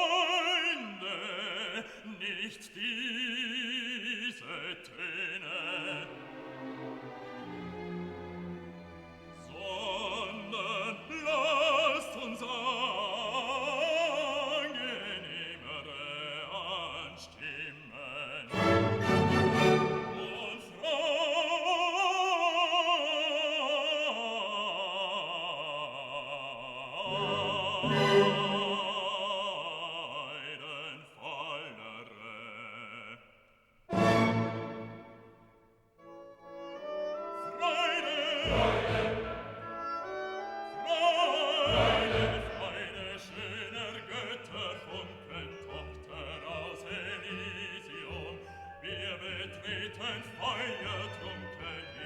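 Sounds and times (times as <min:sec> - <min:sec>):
opera singer with vibrato: 0:00.0 - 0:06.4, 0:09.4 - 0:33.3, 0:36.8 - 0:52.0
orchestral accompaniment: 0:05.7 - 0:12.2, 0:18.5 - 0:21.0, 0:27.0 - 0:29.5, 0:33.9 - 0:52.0.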